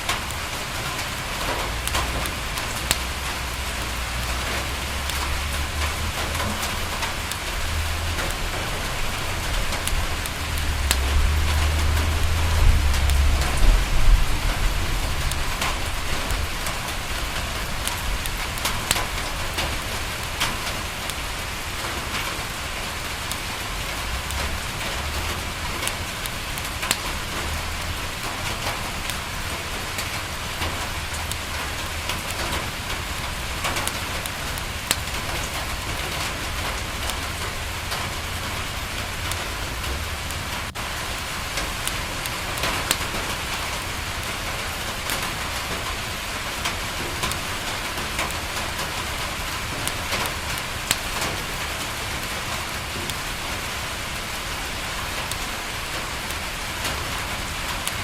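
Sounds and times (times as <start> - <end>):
rain on a window: 0.0 - 58.0
sharp crackles and ticks: 0.0 - 58.0
low rumble: 5.3 - 18.2.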